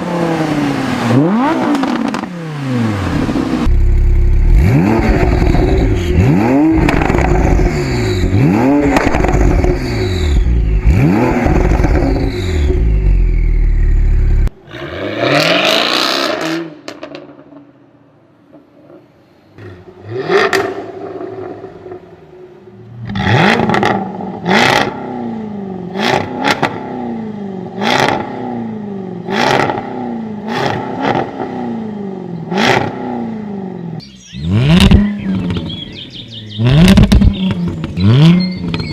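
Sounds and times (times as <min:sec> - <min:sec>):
car exhaust revving: 0:00.0 - 0:16.6, 0:23.0 - 0:27.1, 0:34.3 - 0:35.8, 0:36.5 - 0:38.9
exhaust crackles and pops: 0:03.6 - 0:12.3, 0:34.7 - 0:35.8, 0:36.7 - 0:38.9.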